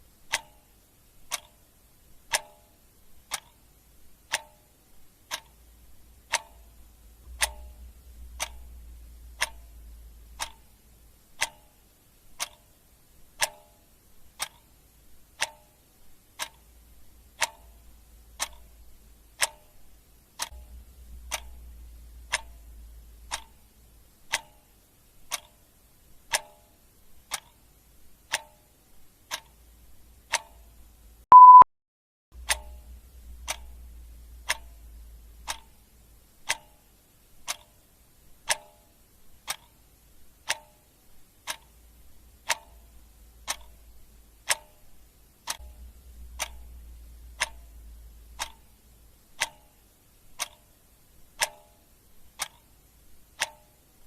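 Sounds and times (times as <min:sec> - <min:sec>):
clock ticking: 0:00.0 - 0:31.6, 0:32.4 - 0:54.0
short high beep: 0:31.3 - 0:31.7.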